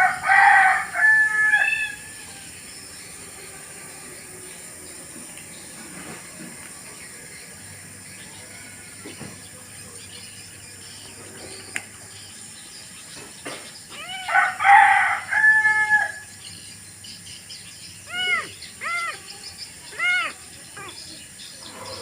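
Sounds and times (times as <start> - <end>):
animal calls: 13.9 - 15.3, 17.8 - 22.0.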